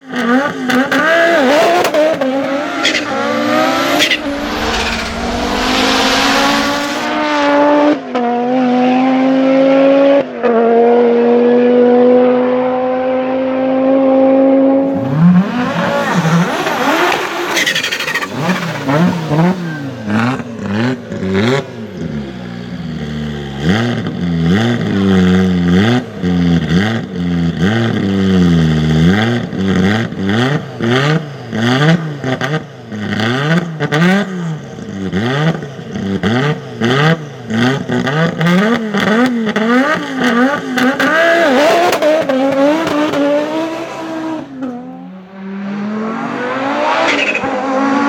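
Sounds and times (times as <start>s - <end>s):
rally car engine at full throttle: 0.0s - 48.0s
engine throttle blips: 2.3s - 7.7s.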